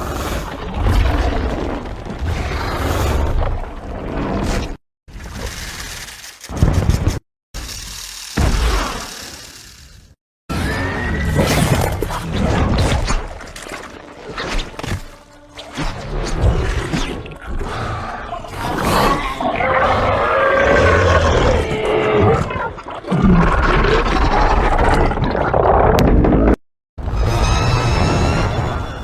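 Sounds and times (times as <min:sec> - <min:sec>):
monster roaring and screeching: 0:17.6 - 0:26.5.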